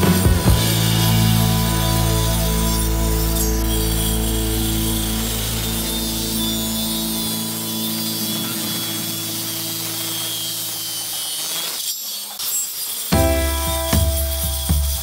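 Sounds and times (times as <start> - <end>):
music with a beat: 0.0 - 3.4, 13.2 - 15.0
electric power tool cutting wood: 0.0 - 15.0.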